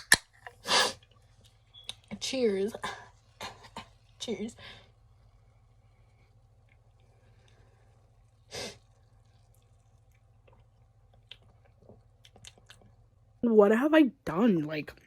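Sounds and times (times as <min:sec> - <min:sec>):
person sipping and swallowing: 0:05.0 - 0:13.1.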